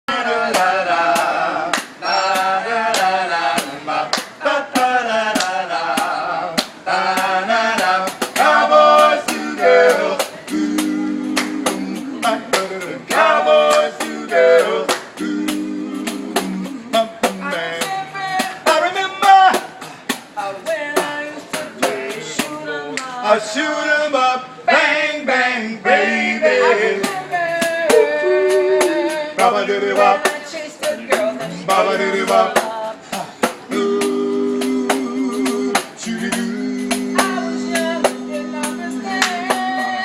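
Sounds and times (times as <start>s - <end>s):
instrumental music with beat: 0.4s - 23.0s, 26.5s - 40.0s
man singing: 25.2s - 33.2s.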